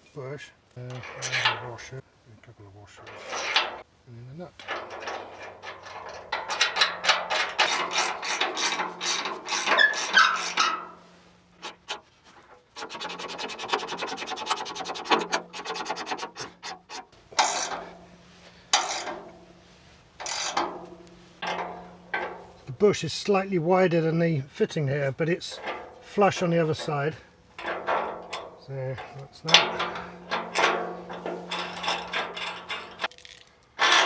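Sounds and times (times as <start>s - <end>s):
ratchet wrench clicking: 6.6s - 10.7s, 11.6s - 12.0s, 12.7s - 17.8s, 18.8s - 19.1s, 20.2s - 20.6s.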